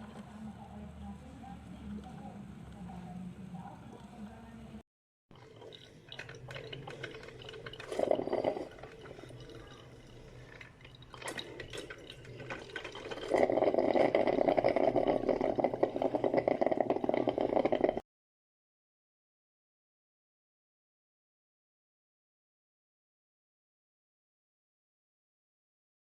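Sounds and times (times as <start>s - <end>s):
coffee maker gurgling and bubbling: 5.3s - 18.0s.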